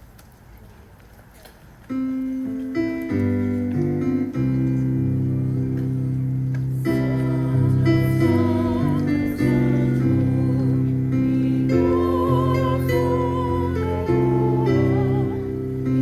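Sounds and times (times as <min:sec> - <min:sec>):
person singing: 0:06.9 - 0:16.0.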